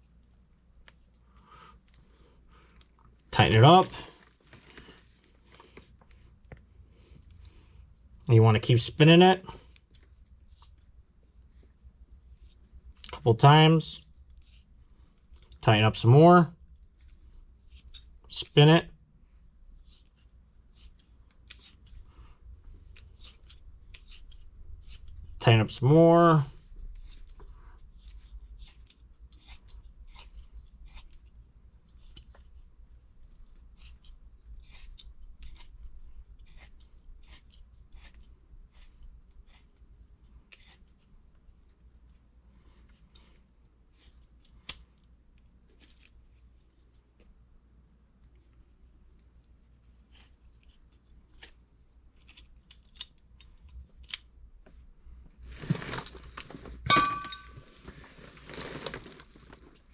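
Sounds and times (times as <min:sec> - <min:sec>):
metallic clatter with ring: 0:56.9 - 0:57.7.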